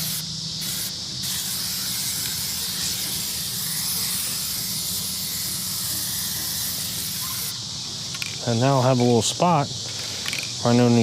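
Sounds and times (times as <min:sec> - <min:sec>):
spray paint can hissing: 0:00.0 - 0:08.7.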